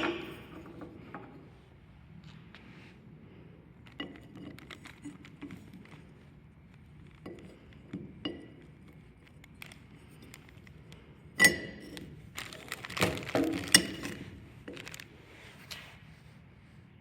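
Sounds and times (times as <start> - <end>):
metal tools clinking: 11.4 - 15.0.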